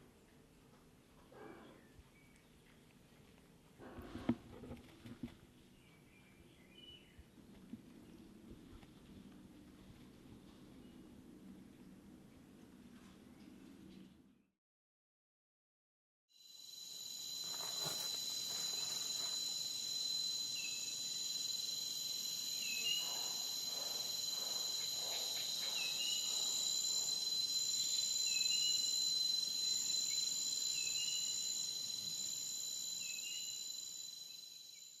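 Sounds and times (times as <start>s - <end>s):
high-pitched insect chirring: 16.5s - 35.0s.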